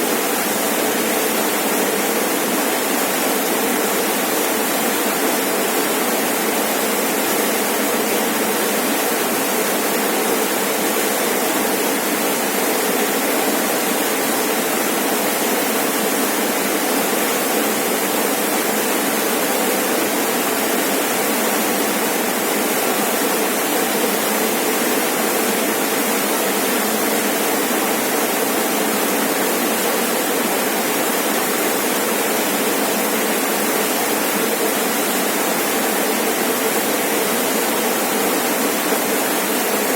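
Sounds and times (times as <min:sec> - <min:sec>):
waterfall rushing and splashing: 0:00.0 - 0:39.9.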